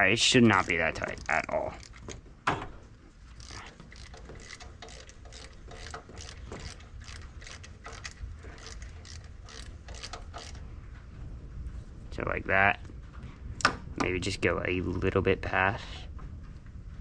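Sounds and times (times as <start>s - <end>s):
hand ratchet clicking: 0.0s - 2.3s, 3.3s - 10.6s.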